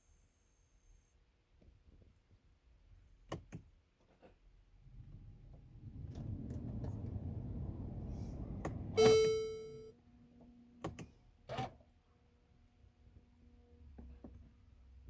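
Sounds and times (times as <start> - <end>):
low rushing whir: 4.9 - 9.9
faint steady hum: 6.1 - 9.9
dashboard warning chime: 9.0 - 9.9.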